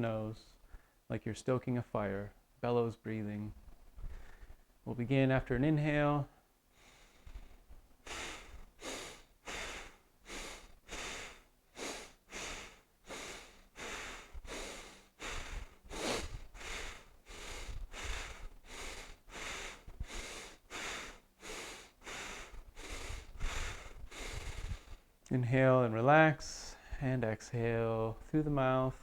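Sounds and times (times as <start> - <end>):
forceful breathing through nose: 4.0 - 4.7, 6.7 - 25.1.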